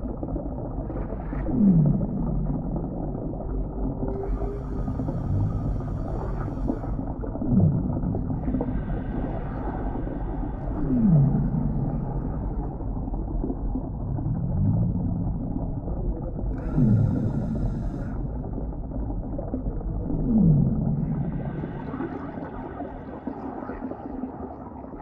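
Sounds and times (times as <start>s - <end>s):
low underwater rumble: 0.0s - 25.0s
deep moaning calls: 3.3s - 13.4s.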